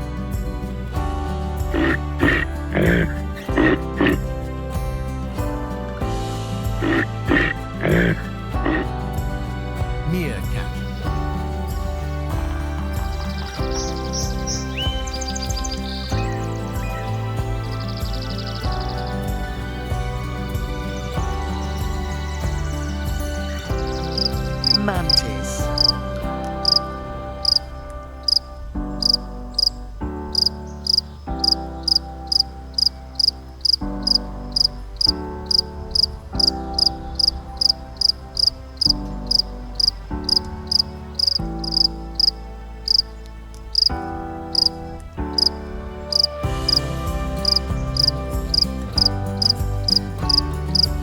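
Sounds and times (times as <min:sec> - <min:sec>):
background music with sustained chords: 0:00.0 - 0:51.0
high-pitched insect chirps: 0:21.5 - 0:26.0, 0:26.6 - 0:27.7, 0:29.0 - 0:29.7, 0:30.3 - 0:43.1, 0:44.5 - 0:44.7, 0:45.4 - 0:51.0.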